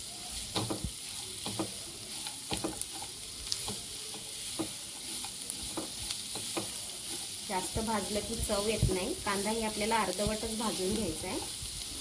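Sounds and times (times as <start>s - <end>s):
vegetables sizzling in oil: 0.0s - 12.0s
spoon scraping and tapping pan: 0.4s - 7.5s.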